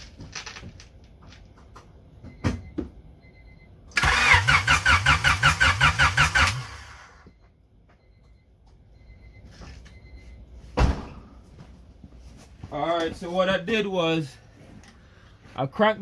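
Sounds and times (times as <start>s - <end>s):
engine cranking on starter motor: 3.9s - 7.2s.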